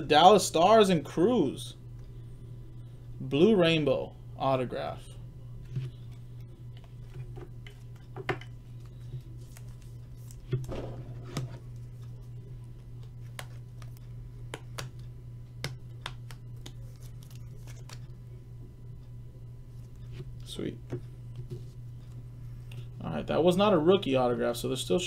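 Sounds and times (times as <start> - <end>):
steady low hum: 0.0 - 25.0
card sleeves clicking and rustling: 8.7 - 11.8.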